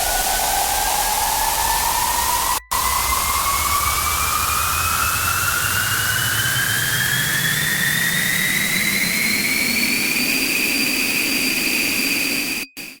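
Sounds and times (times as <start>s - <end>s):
loud hiss: 0.0s - 6.6s
high electronic whine: 0.0s - 13.0s.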